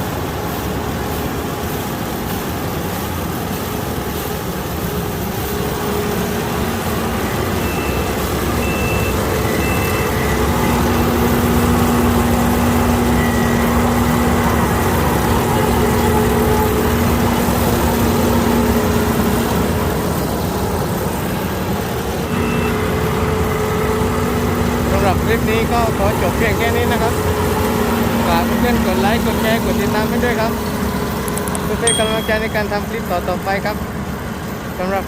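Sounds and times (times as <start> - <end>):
combine harvester running: 0.0 - 35.0
short high beeps: 7.6 - 10.4, 31.8 - 32.9.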